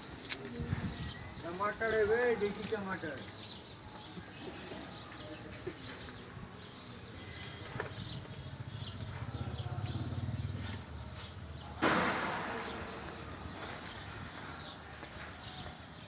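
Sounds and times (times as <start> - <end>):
birds chirping: 0.0 - 16.0
machine engine thudding: 11.8 - 13.2.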